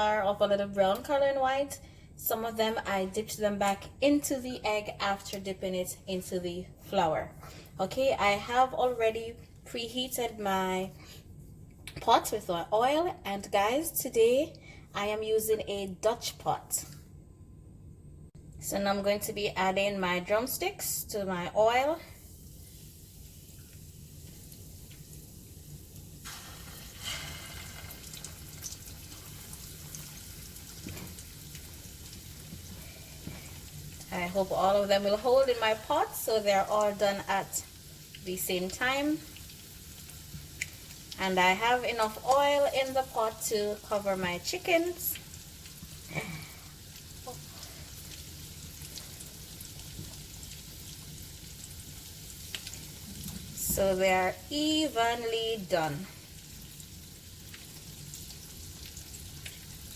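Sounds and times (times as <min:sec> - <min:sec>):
chicken sizzling in hot oil: 0:21.8 - 0:59.9.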